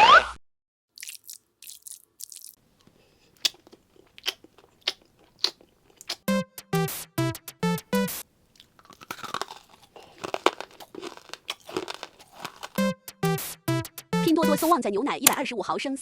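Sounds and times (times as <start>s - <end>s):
crunchy chewing of food: 1.0s - 6.3s, 8.4s - 12.9s.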